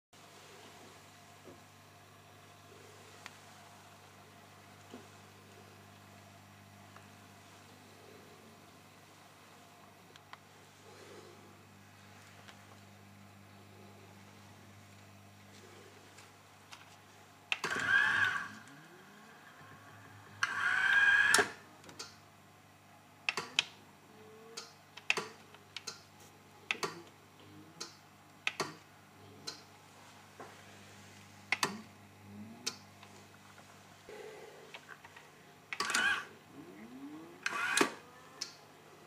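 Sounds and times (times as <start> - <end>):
steady low hum: 0.2 - 39.0
mechanism clicks and clunks: 17.5 - 18.7, 23.2 - 23.8, 24.5 - 26.1, 26.7 - 27.2, 27.8 - 29.7, 31.5 - 31.9, 34.7 - 36.3, 37.4 - 38.6
whirring motor with whine: 17.5 - 22.1, 31.5 - 39.0.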